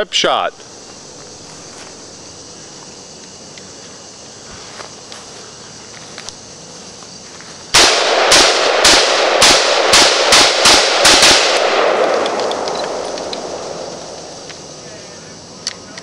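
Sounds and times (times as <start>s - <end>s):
rifle firing rapidly: 7.8s - 13.8s
gunshot echo: 7.8s - 14.3s.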